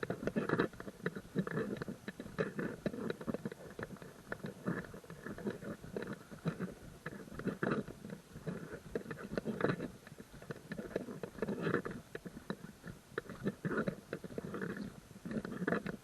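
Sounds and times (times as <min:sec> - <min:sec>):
scuffs and small clicks: 0:00.0 - 0:16.0.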